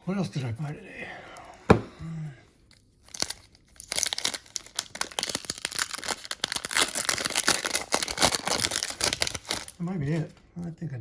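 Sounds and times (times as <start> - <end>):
short thud: 1.7 - 2.0
packaging crinkling: 3.1 - 9.8.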